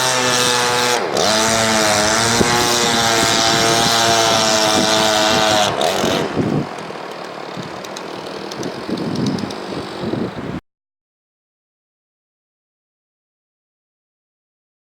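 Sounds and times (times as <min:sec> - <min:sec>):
chainsaw running underwater: 0:00.0 - 0:10.5.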